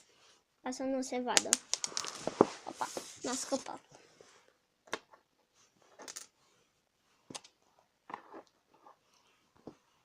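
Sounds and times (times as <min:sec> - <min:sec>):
plastic bricks clicking together: 0:01.4 - 0:02.2.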